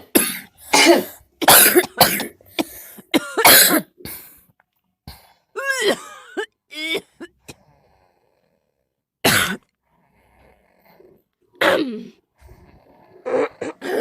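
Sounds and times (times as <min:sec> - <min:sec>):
person coughing: 0:00.0 - 0:04.3, 0:05.6 - 0:07.4, 0:09.2 - 0:09.6, 0:11.6 - 0:12.2, 0:13.3 - 0:14.0.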